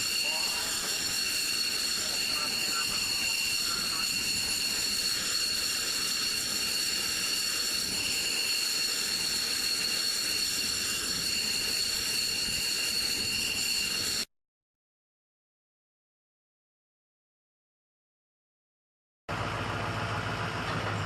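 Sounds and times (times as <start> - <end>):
jet engine hiss and whine: 0.0 - 14.3.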